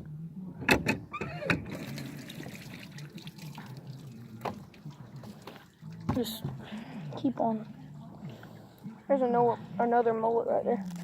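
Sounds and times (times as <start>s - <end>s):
water running from tap: 1.8s - 6.3s.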